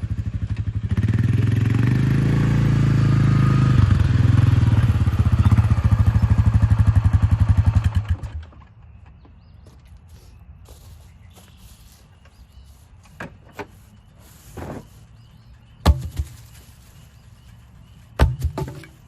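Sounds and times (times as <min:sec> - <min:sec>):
quad engine rumbling: 0:00.0 - 0:09.7, 0:11.6 - 0:19.0
logs knocking: 0:15.8 - 0:16.5, 0:18.2 - 0:19.0.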